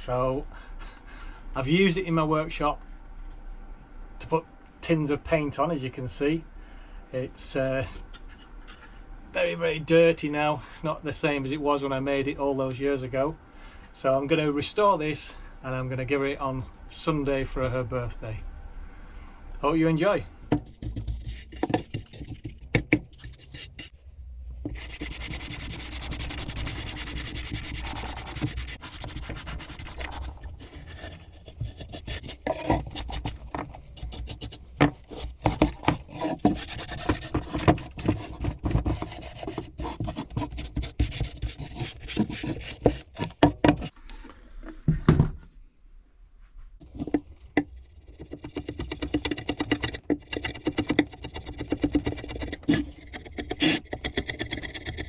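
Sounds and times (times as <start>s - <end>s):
rubbing and scraping on wood: 20.5s - 24.0s, 24.6s - 44.0s, 46.8s - 55.0s.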